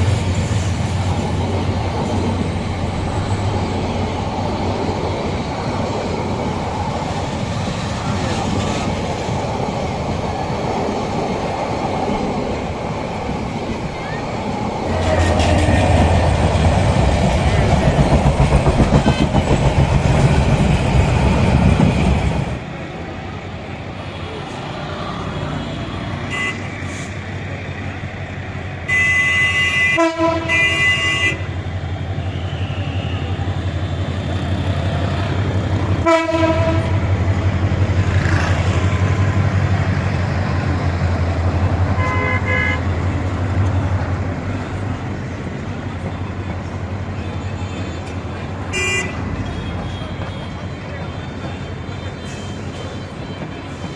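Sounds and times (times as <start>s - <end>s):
train passing at speed: 0.0s - 53.9s
train horn toots: 14.8s - 16.2s, 28.9s - 31.5s, 36.0s - 37.0s, 42.0s - 42.9s, 48.7s - 50.5s.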